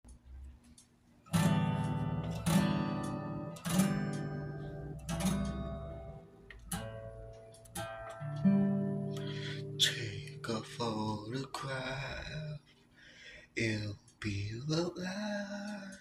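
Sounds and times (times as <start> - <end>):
acoustic guitar strumming chords: 1.3 - 12.6.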